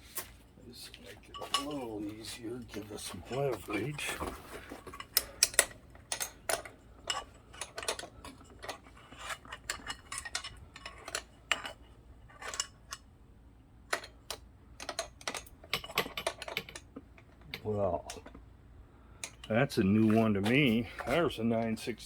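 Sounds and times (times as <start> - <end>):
metal hand tools clinking: 1.2 - 13.0, 19.2 - 21.2.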